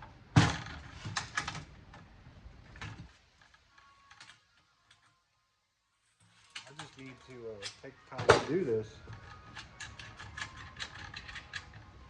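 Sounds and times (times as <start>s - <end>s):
small hard parts clattering: 6.2s - 12.0s.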